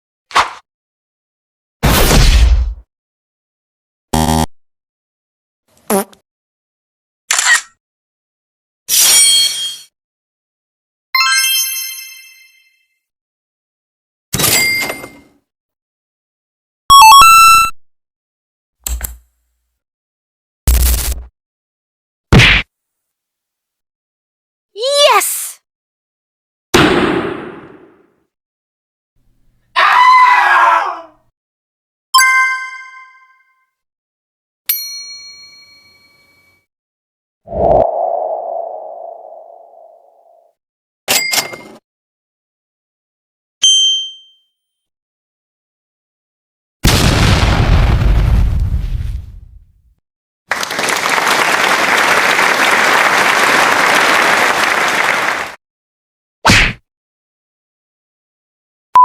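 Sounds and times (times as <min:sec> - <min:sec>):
bell dings: 0:32.2 - 0:33.6, 0:34.7 - 0:36.6, 0:43.6 - 0:44.6
noisy sound effect: 0:37.5 - 0:40.0
crowd applause: 0:50.5 - 0:55.6.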